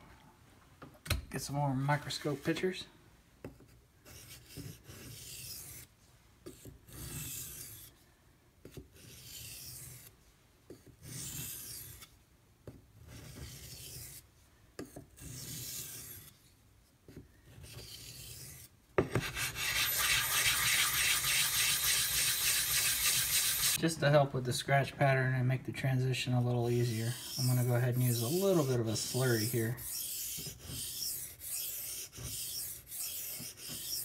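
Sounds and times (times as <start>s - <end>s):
knife scraping on whetstone: 4.1s - 5.9s, 6.5s - 7.9s, 9.0s - 10.1s, 11.0s - 12.1s, 13.1s - 14.2s, 15.2s - 16.3s, 17.6s - 23.8s, 26.8s - 34.0s.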